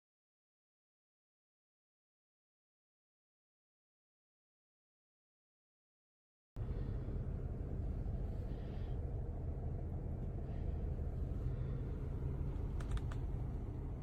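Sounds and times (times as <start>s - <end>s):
low rumble: 6.6s - 14.0s
small clicks: 12.6s - 13.6s.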